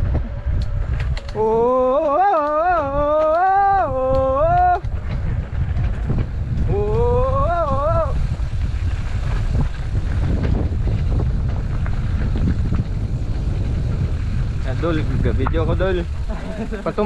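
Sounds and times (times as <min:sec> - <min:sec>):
bike riding noise: 0:00.0 - 0:17.0
wind rumble: 0:00.0 - 0:17.0
person calling out: 0:01.4 - 0:04.8, 0:06.7 - 0:08.2.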